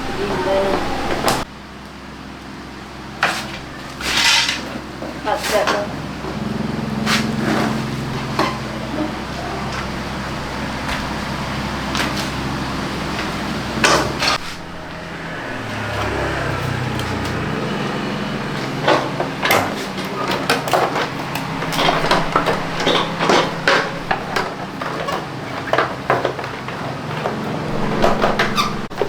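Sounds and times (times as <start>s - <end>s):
low mechanical hum: 0.0s - 29.0s
metal tools clinking: 18.6s - 25.1s.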